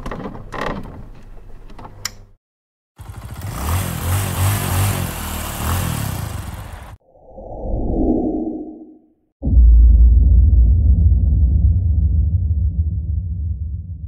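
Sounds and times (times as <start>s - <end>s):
small motorcycle engine revving: 3.0s - 7.0s.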